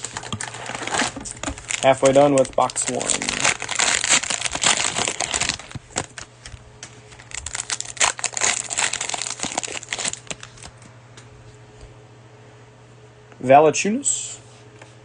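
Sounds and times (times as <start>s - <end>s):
cellophane wrapper crinkling: 0.0s - 10.8s.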